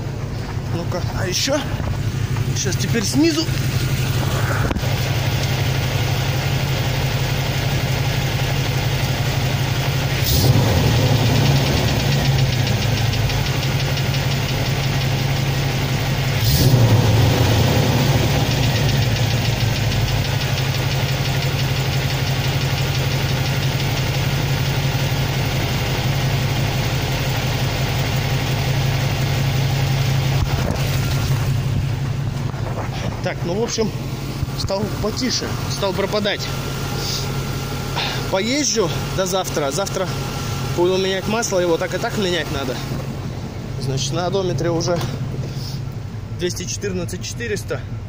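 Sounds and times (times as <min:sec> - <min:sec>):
engine idling: 0:00.0 - 0:48.0.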